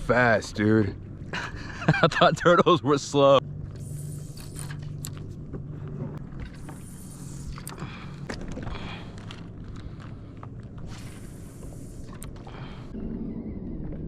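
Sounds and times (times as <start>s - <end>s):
steady low hum: 0.0s - 14.0s
water lapping against kayak: 3.6s - 12.9s.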